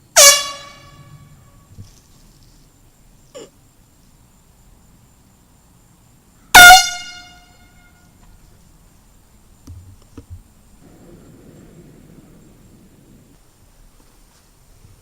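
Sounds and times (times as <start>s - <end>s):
air horn blast: 0.1s - 1.7s, 6.5s - 8.1s.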